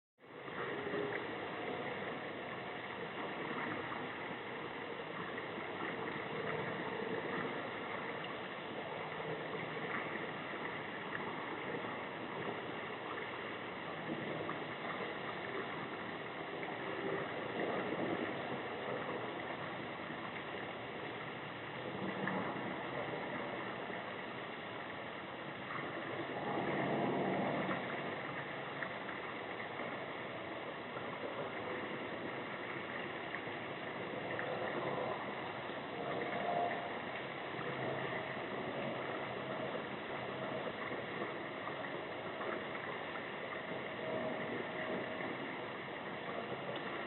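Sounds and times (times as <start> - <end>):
faint steady high tones: 22.3 - 47.0.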